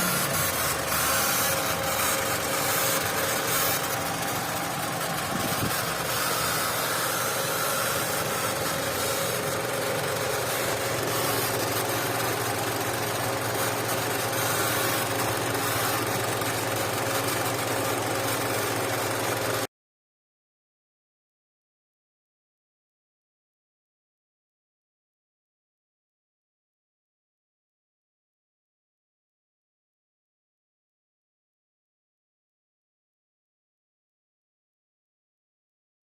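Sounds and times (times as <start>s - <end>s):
car engine idling: 0.0s - 19.6s
steady tone over engine: 0.0s - 19.7s.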